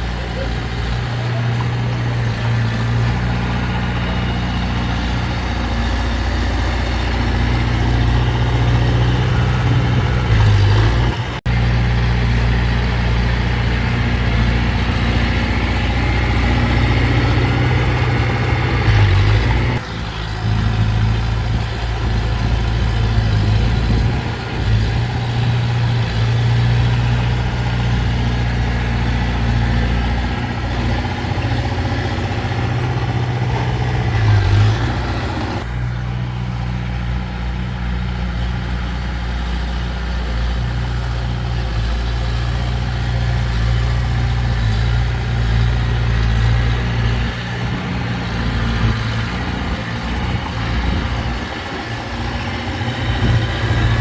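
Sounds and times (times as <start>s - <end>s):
heavy diesel engine running: 0.0s - 54.0s.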